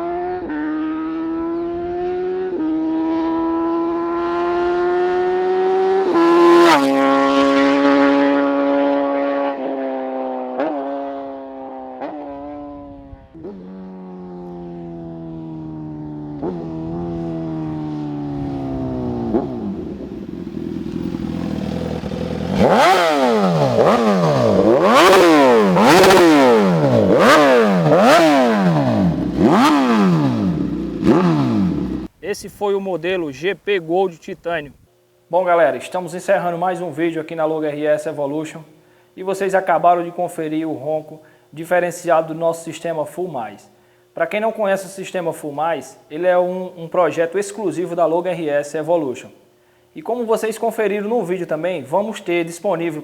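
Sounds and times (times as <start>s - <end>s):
motorcycle engine revving: 0.0s - 32.1s
exhaust cracks: 19.1s - 32.2s.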